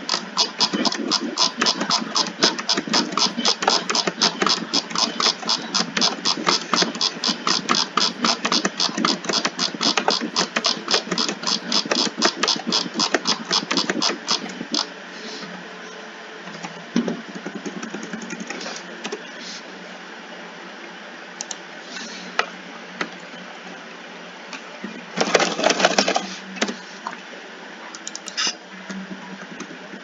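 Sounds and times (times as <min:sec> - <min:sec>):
sharp clicks: 0:00.0 - 0:14.9
steady hum: 0:00.0 - 0:30.0.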